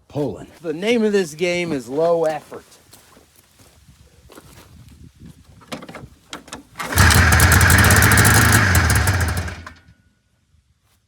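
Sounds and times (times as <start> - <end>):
pull-start knocks: 6.8 - 9.8
two-stroke engine running loud: 6.9 - 9.8.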